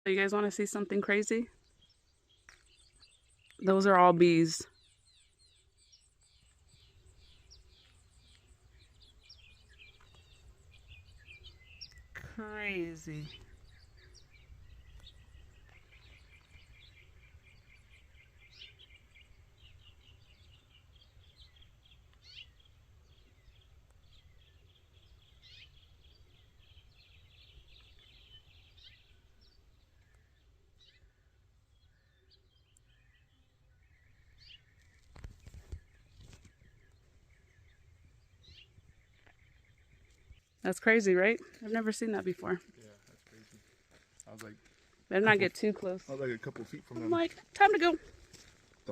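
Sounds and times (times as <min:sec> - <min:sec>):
birds trilling: 0:00.1 - 0:23.6, 0:44.6 - 0:48.9.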